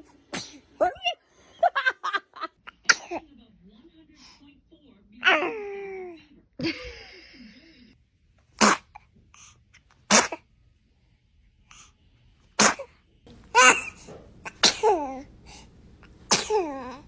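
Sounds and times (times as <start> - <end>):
person sneezing: 0.3 - 0.7, 8.6 - 9.0, 10.1 - 10.4, 12.6 - 12.9, 13.6 - 15.2, 16.3 - 17.0.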